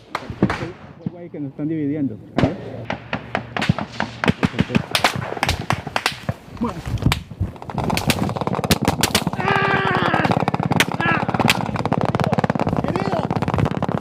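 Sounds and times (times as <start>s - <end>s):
gunshots and automatic fire: 2.4s - 6.4s, 7.4s - 14.0s
man shouting: 9.3s - 11.5s.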